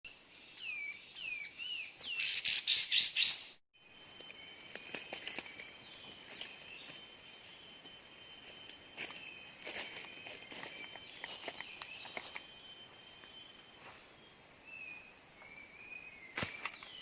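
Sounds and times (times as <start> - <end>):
songbird whistled notes: 0.6 - 17.0
high insect drone: 3.8 - 17.0.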